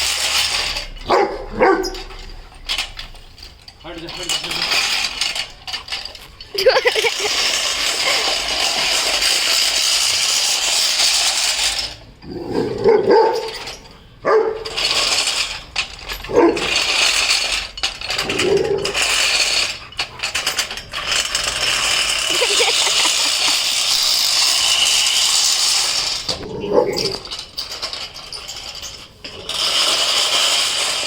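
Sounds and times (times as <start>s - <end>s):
puppy barking and growling: 1.0s - 2.1s, 12.3s - 13.6s, 22.2s - 23.8s, 26.4s - 27.2s
lawn mower running: 6.2s - 9.5s, 20.9s - 26.3s.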